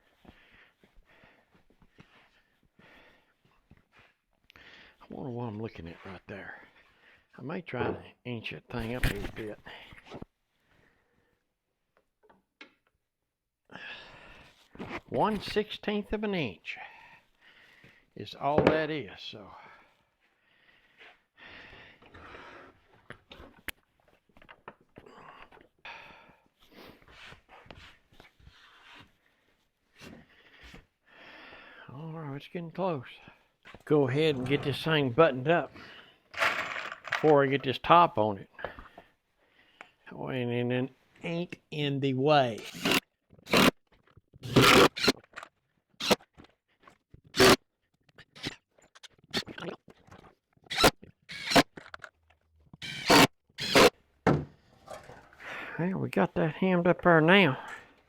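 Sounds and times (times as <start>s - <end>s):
tools knocking on workbench: 54.3s - 54.6s.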